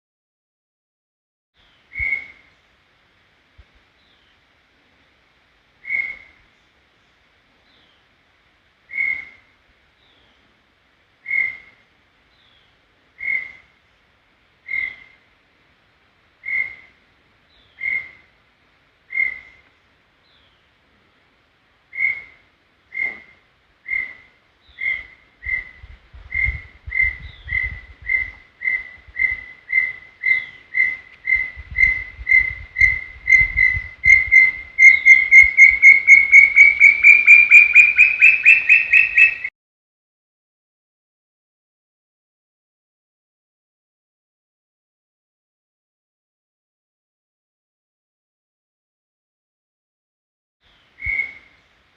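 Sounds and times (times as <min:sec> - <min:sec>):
bird whistling: 0:01.9 - 0:02.4, 0:05.8 - 0:06.3, 0:26.4 - 0:39.5, 0:51.0 - 0:51.5.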